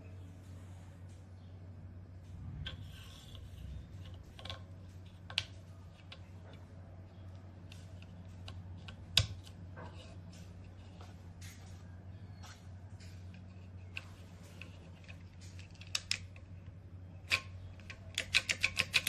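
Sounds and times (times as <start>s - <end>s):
low hum: 0.0s - 18.2s
mechanical keyboard clicking: 17.8s - 19.0s.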